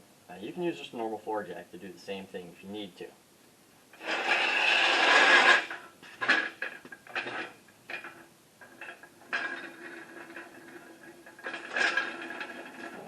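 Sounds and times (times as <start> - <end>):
metal scraping: 3.9 - 13.0.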